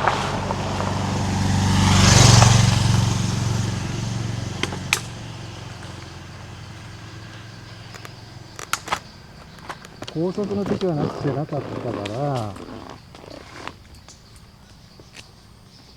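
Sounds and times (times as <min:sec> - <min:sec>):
vehicle passing: 0:00.0 - 0:15.7
sharp clicks: 0:07.9 - 0:12.2.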